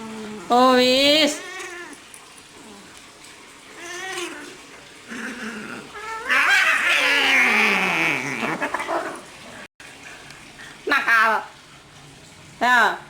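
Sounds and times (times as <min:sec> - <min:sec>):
cats screeching and hissing: 0:01.3 - 0:02.0, 0:03.7 - 0:09.2
cats yowling: 0:01.3 - 0:02.9, 0:03.7 - 0:09.2.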